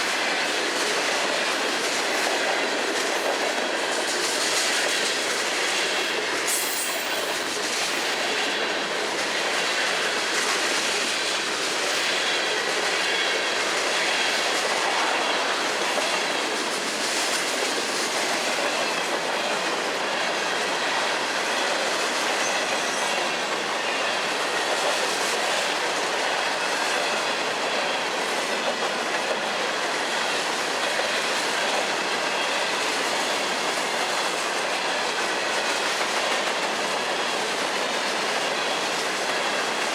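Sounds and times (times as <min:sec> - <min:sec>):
train wheels clattering on track: 0:00.0 - 0:39.9
faint high wheel squeal: 0:06.5 - 0:07.5, 0:22.4 - 0:23.3.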